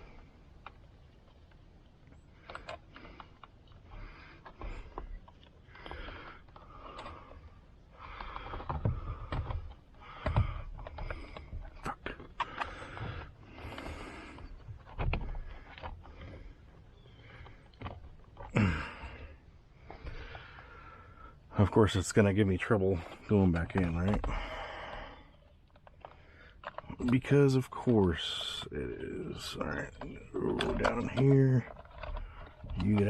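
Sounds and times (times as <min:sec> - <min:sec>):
rustling and scraping: 0:00.0 - 0:33.0
plastic clicks and knocks: 0:00.1 - 0:16.5, 0:29.4 - 0:33.0.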